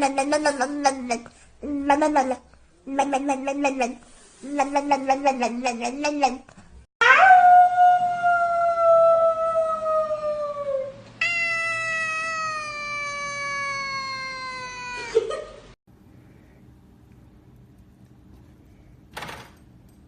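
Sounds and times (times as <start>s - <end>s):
cat yowling: 7.0s - 15.3s.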